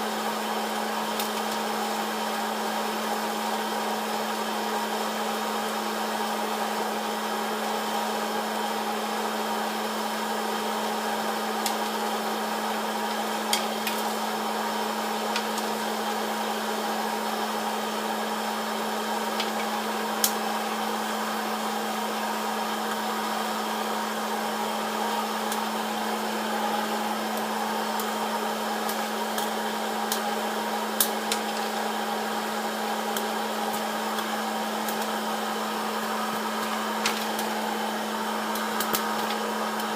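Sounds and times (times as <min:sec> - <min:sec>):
popcorn popper blower humming: 0:00.0 - 0:39.9
popcorn kernels popping: 0:01.1 - 0:01.8, 0:11.6 - 0:12.1, 0:13.1 - 0:16.3, 0:19.3 - 0:20.4, 0:27.4 - 0:30.3, 0:30.9 - 0:32.1, 0:33.0 - 0:35.3, 0:36.0 - 0:37.8, 0:38.5 - 0:39.9.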